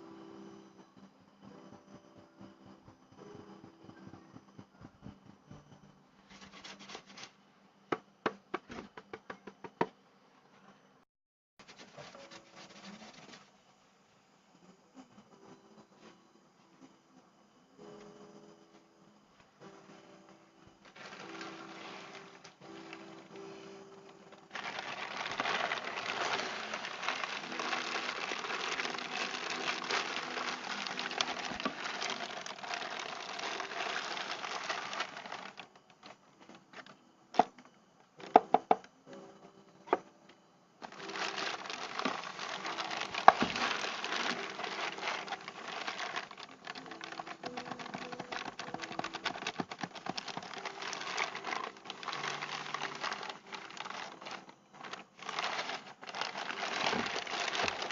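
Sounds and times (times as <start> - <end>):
plastic packaging crinkling: 6.3 - 7.3, 11.7 - 13.5, 20.9 - 36.6, 40.8 - 57.9.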